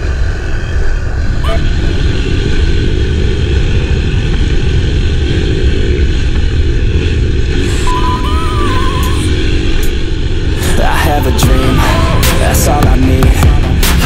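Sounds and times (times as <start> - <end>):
loud rushing noise: 0.0 - 14.0
high warbling whistle: 7.6 - 10.0.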